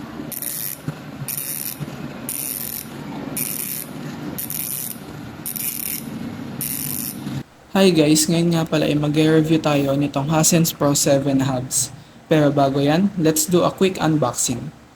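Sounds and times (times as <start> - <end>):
bicycle hub ratcheting: 0.3 - 7.2.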